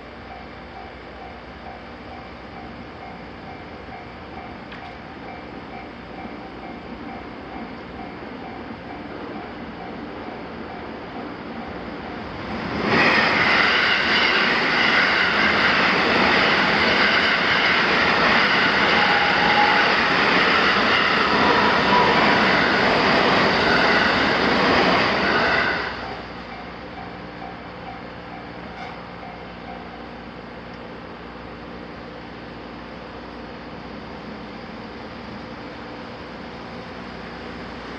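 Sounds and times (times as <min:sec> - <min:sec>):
level crossing warning bell: 0:00.0 - 0:11.7, 0:25.2 - 0:30.3
train wheel and rail noise: 0:00.0 - 0:37.9.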